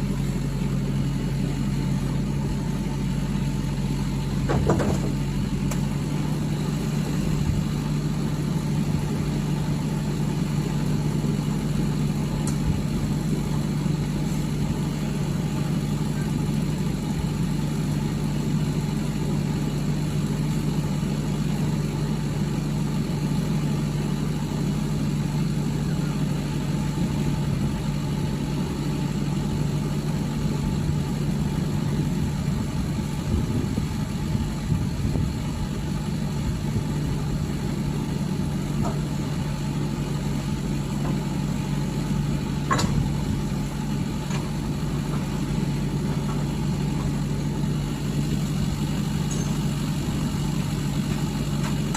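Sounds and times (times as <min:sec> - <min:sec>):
diesel lorry engine running: 0:00.0 - 0:51.9.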